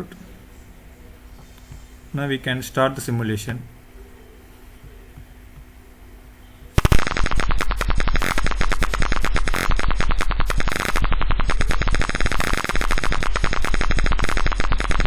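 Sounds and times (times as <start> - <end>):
rapid rattling alarm buzz: 6.8 - 15.0.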